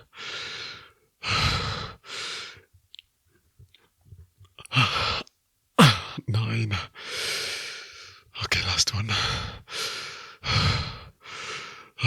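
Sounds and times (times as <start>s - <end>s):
man breathing hard: 5.8s - 6.1s.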